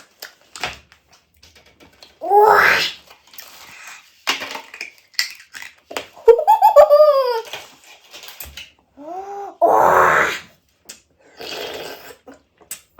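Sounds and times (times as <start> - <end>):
person wailing: 2.2 - 2.9, 6.3 - 7.4, 9.2 - 10.4
person yelping: 2.2 - 2.9, 6.3 - 7.4, 9.6 - 10.4.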